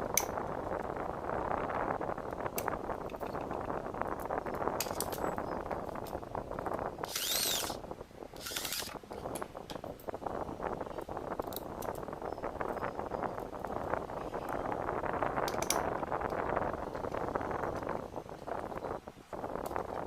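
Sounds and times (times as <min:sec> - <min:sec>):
drill press whirring: 0:07.0 - 0:07.8, 0:08.4 - 0:09.0.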